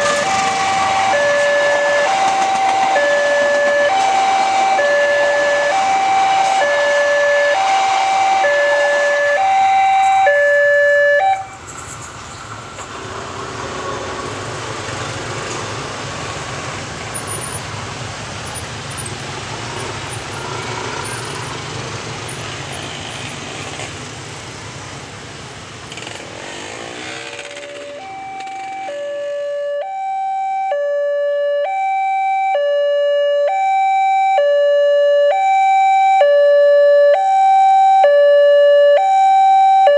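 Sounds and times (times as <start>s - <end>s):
train wheels rumbling on rail: 0.0s - 10.3s, 11.4s - 28.8s
two-note crossing siren: 0.0s - 11.6s, 27.8s - 39.9s.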